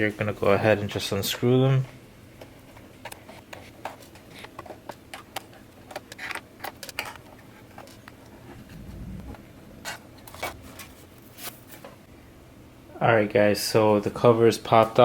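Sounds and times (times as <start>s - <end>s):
short low thud: 8.6s - 10.0s.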